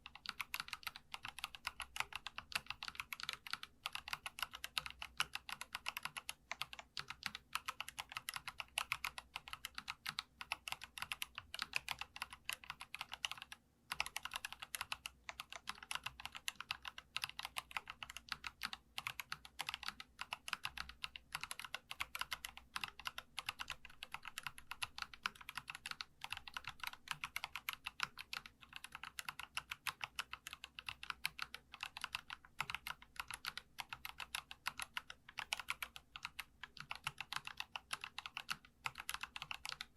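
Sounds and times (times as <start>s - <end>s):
mechanical keyboard typing: 0.0s - 39.9s.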